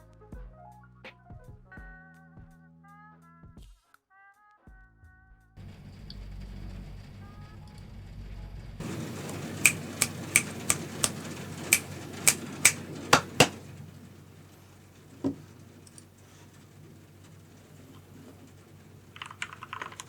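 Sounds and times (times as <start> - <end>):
mechanical keyboard keystrokes: 8.8 - 13.6, 19.1 - 20.0
dull knock: 13.1 - 13.6.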